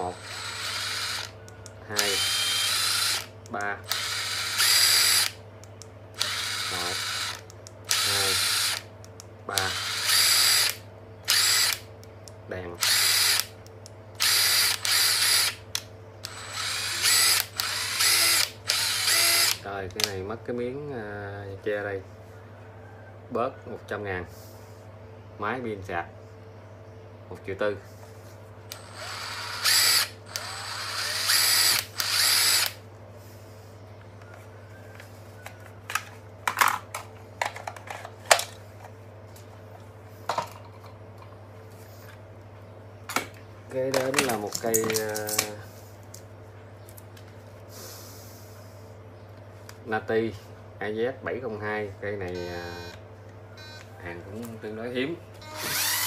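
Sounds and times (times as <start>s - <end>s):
impact driver motor whine: 0.0s - 1.4s, 2.0s - 3.3s, 3.9s - 5.4s, 6.2s - 8.9s, 9.6s - 11.9s, 12.8s - 13.6s, 14.2s - 15.6s, 16.2s - 19.6s, 28.7s - 32.8s, 55.4s - 56.0s.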